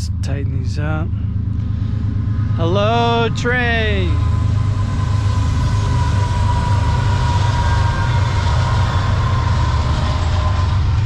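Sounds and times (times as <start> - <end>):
heavy vehicle engine rumble: 0.0 - 11.0
thin steady whine: 0.0 - 11.0.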